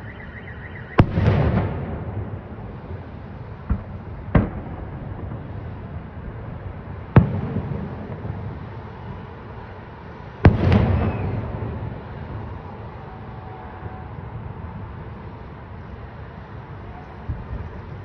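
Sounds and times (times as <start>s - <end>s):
fireworks bangs: 0.0s - 9.8s, 10.4s - 15.2s
low rumbling echo: 1.0s - 8.7s.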